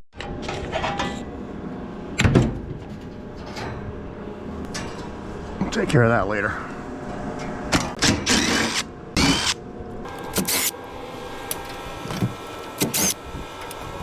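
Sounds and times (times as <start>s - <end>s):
metal scraping: 10.1s - 14.0s.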